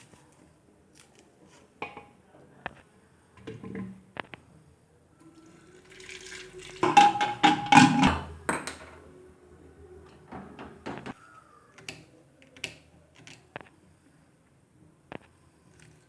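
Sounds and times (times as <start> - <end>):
water splashing from tap: 5.4 - 8.3
knocks and clicks in kitchen: 6.8 - 9.0, 10.1 - 11.2.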